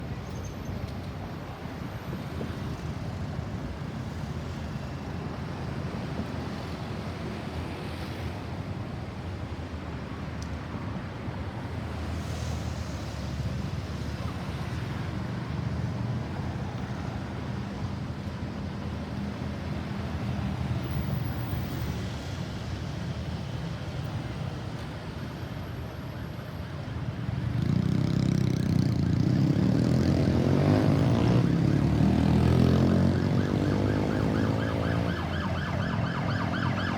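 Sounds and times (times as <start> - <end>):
road traffic rumble: 0.0 - 36.9
ambulance siren: 24.5 - 27.9, 29.0 - 36.9.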